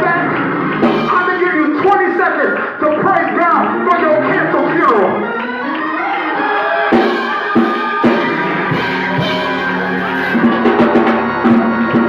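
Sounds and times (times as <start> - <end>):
drum kit hits: 0.0 - 2.2, 6.9 - 12.0
sustained keyboard chords: 0.0 - 12.0.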